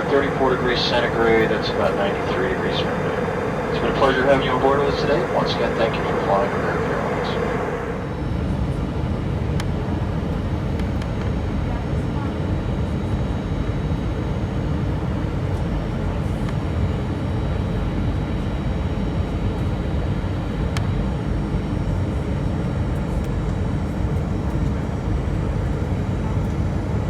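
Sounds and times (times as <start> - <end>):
aircraft cabin rumble: 0.0 - 8.8.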